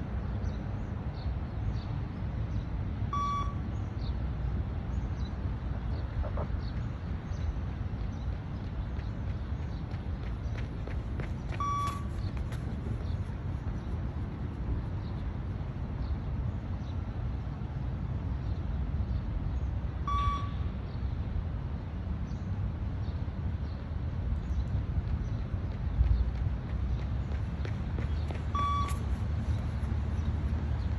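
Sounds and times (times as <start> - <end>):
short electronic beeps: 3.2 - 3.6, 11.6 - 12.1, 20.1 - 20.7, 28.6 - 29.0.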